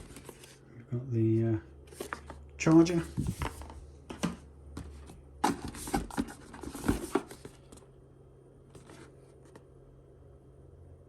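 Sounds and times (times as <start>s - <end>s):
rustling of packaging: 0.0s - 0.6s, 1.9s - 7.9s.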